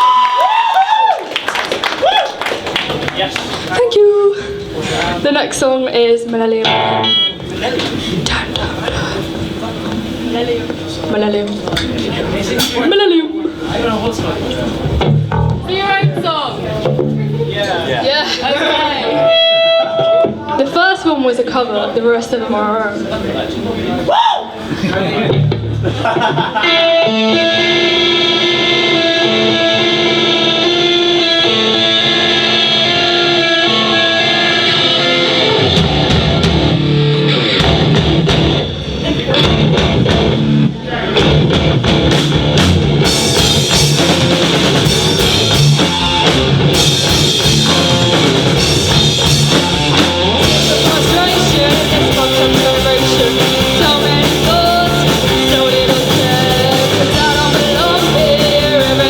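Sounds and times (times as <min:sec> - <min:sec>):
electric guitar: 0:06.3 - 0:08.6, 0:14.4 - 0:17.5, 0:19.0 - 0:20.8, 0:24.9 - 0:59.0
live rock band playing: 0:06.4 - 0:07.9, 0:14.4 - 0:21.1, 0:25.1 - 0:59.0.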